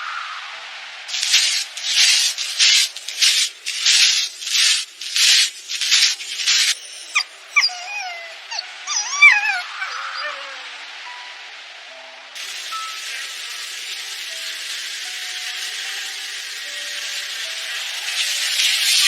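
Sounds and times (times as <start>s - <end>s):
dog panting: 1.4s - 10.7s
dog whimpering: 6.6s - 10.8s.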